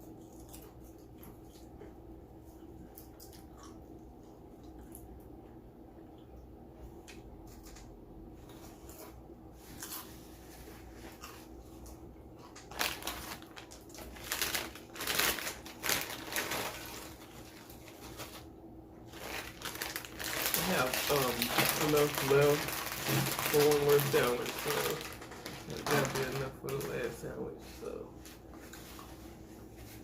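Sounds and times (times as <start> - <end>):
quiet chewing and mouth clicks: 0.0 - 10.2.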